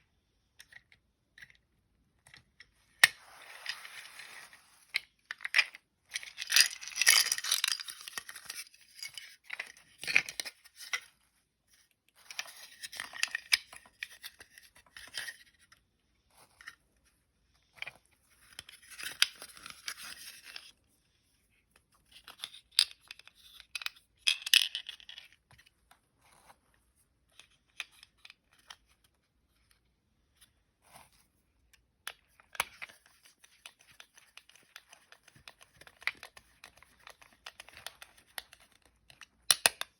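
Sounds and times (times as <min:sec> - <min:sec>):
scraping and rustling on a toy: 0:03.1 - 0:05.2.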